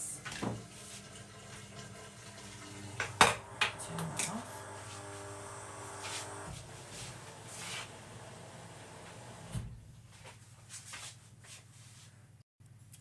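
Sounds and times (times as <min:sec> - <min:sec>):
washing machine humming: 0:00.0 - 0:10.2.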